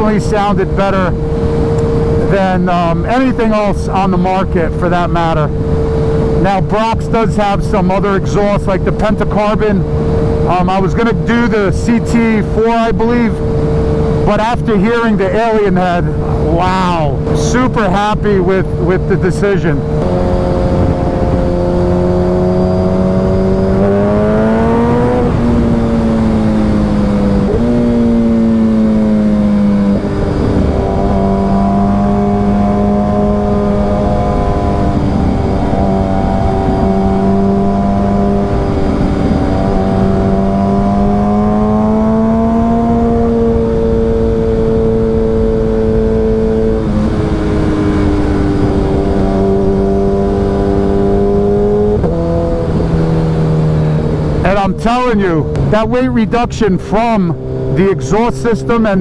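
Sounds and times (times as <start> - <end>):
wind rushing: 0.0 - 8.6, 19.8 - 56.5
motorcycle engine revving: 0.0 - 59.0.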